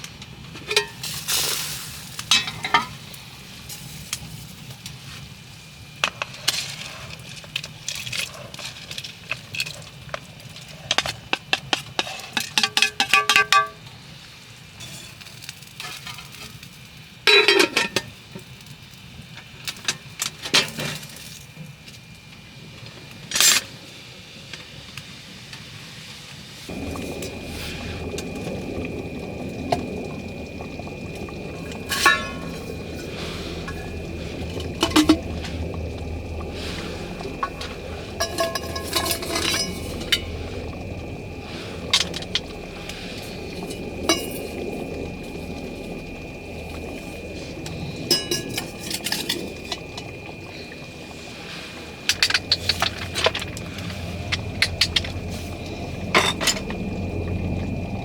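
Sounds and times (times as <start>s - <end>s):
metal cookware clinking: 0.7s - 1.1s, 17.3s - 18.0s, 37.4s - 40.3s.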